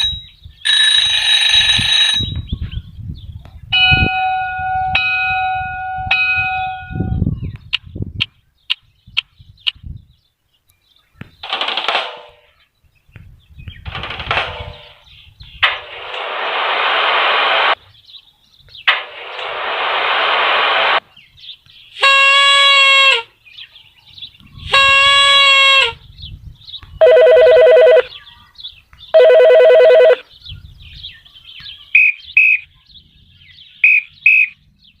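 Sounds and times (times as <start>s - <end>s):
hissing noise bursts: 15.6s - 17.8s, 18.9s - 21.0s
ringing tones: 27.0s - 28.1s, 29.2s - 30.2s.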